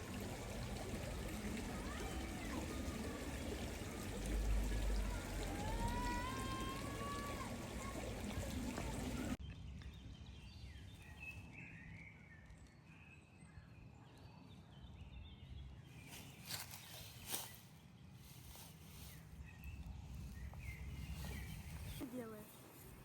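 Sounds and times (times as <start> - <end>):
running water: 0.0 - 9.4.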